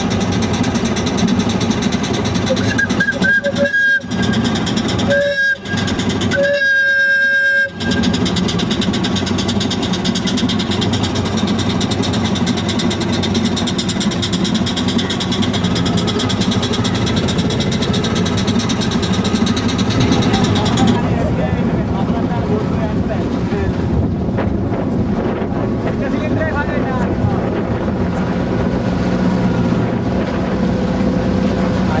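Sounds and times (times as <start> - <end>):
steam engine beating: 0.0 - 32.0
two-note whistle blasts: 2.5 - 8.2.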